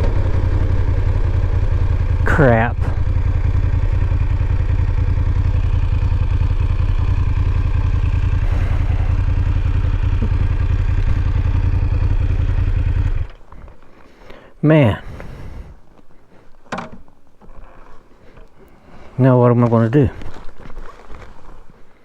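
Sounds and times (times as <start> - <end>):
motorcycle engine idling: 0.0 - 13.6.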